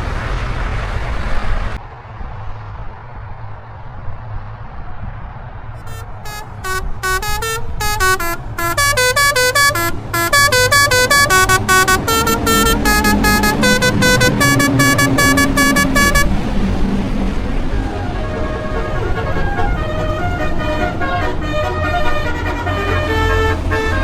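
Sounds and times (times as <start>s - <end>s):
musical truck horn tune: 5.8s - 16.4s, 17.9s - 24.0s.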